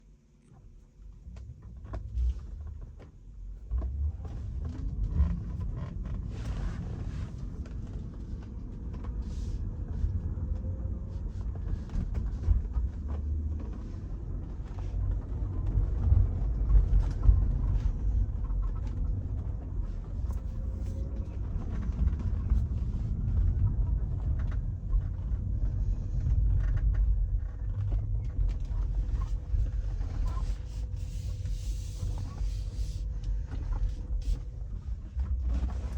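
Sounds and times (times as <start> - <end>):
car road rumble: 0.6 - 35.9.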